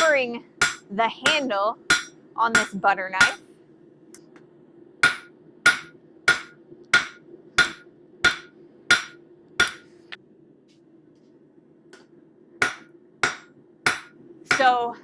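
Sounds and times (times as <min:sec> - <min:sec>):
hammer ringing on hot steel: 0:00.0 - 0:03.4, 0:05.0 - 0:09.9, 0:12.6 - 0:14.8
steady low hum: 0:00.0 - 0:15.0.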